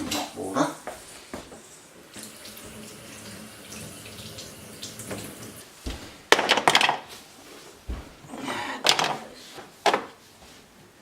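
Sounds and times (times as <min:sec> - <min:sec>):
tap water running into sink: 0:01.4 - 0:05.6.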